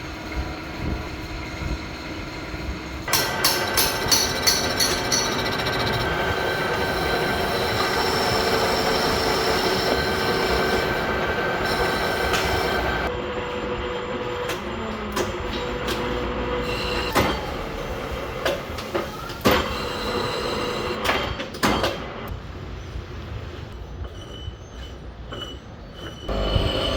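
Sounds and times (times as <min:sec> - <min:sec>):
lathe humming: 0:03.1 - 0:17.1, 0:26.3 - 0:26.9
lathe cutting whine: 0:03.1 - 0:17.2, 0:26.3 - 0:26.9.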